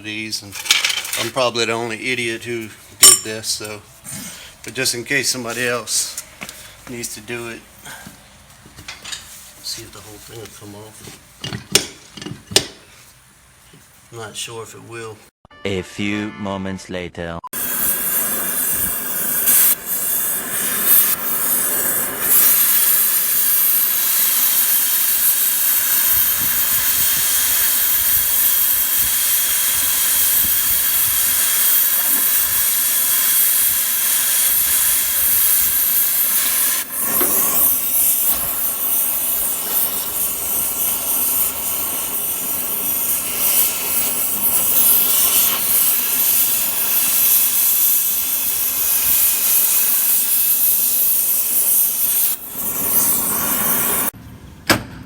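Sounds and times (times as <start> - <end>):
loud hissing noise: 17.6 - 54.2.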